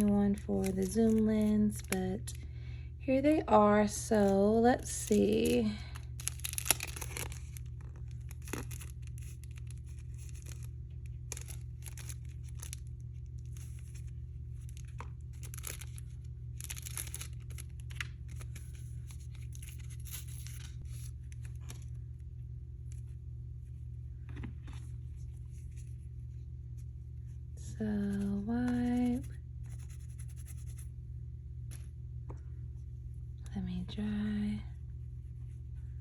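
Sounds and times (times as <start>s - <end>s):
plastic packaging crinkling: 0.0s - 2.4s, 3.8s - 22.0s
steady low hum: 0.0s - 36.0s.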